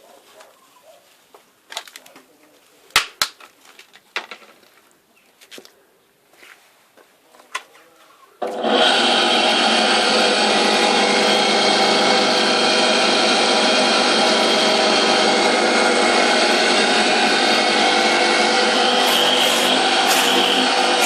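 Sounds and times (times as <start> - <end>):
wood chipper motor whining: 8.4 - 21.0.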